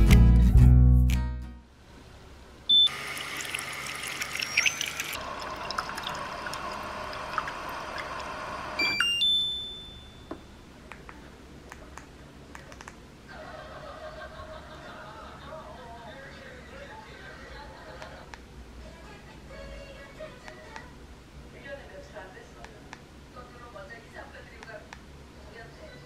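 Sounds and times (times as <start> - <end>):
water running: 2.9 - 8.8.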